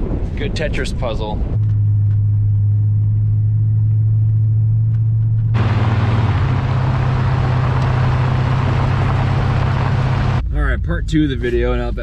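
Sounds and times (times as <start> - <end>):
road and wind noise: 0.0 - 10.4
truck engine droning: 1.6 - 10.4.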